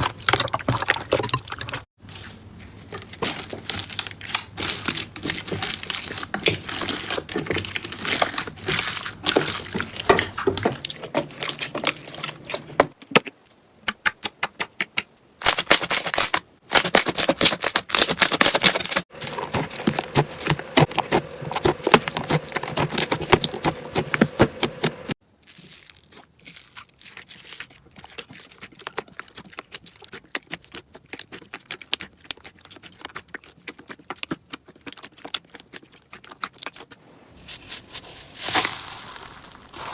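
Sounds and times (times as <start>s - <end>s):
slime crackling and popping: 38.4s - 39.9s.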